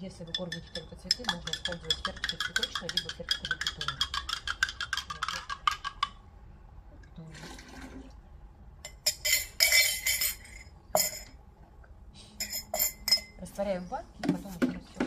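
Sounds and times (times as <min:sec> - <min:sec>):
glass clink: 0:08.9 - 0:11.4, 0:12.4 - 0:13.4.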